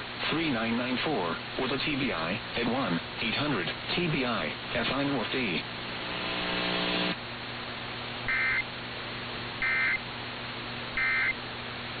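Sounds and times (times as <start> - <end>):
radio hiss and hum: 0.0 - 8.8, 9.5 - 10.1, 10.8 - 12.0
warbling data bursts: 8.3 - 8.6, 9.6 - 10.0, 11.0 - 11.4.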